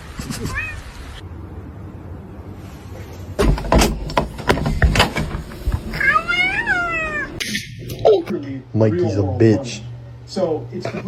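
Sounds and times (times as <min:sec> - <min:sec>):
long cat meow: 0:00.4 - 0:00.9
knocks and thumps: 0:03.4 - 0:06.0.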